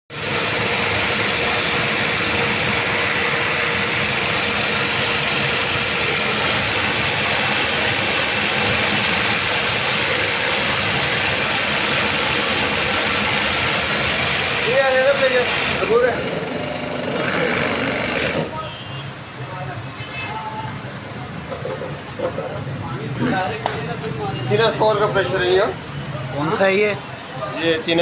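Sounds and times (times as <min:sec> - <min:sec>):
pressure washer running: 0:00.1 - 0:19.0.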